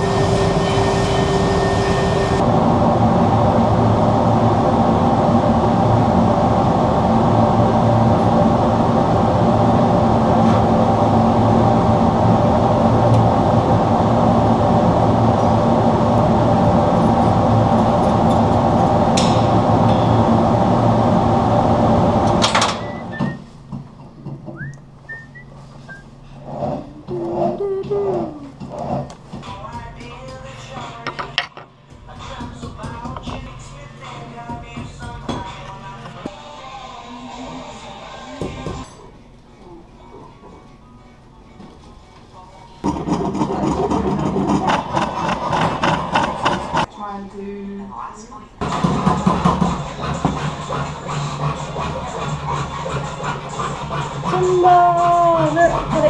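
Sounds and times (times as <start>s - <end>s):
workshop machine humming: 0.0s - 26.0s, 42.8s - 46.9s.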